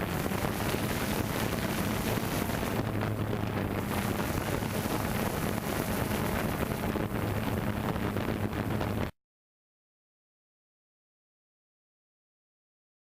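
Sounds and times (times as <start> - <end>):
drone propellers humming: 0.0 - 9.1
wind rushing over microphone: 0.0 - 9.2.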